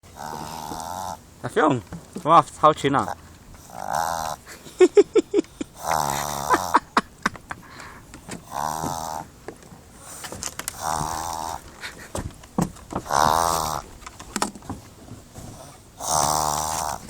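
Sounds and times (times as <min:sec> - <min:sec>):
dog snoring through nose: 0:00.0 - 0:01.3, 0:02.5 - 0:05.0, 0:05.6 - 0:07.2, 0:07.8 - 0:12.2, 0:12.9 - 0:14.5, 0:15.2 - 0:17.0.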